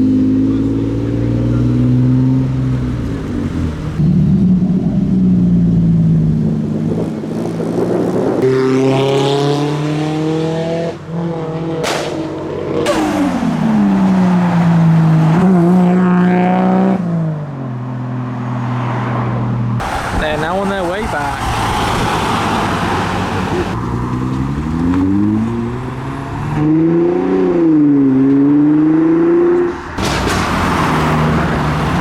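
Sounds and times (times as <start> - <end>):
car engine revving: 0.0 - 17.3, 19.8 - 32.0
sharp bangs: 11.8 - 14.8, 30.0 - 32.0.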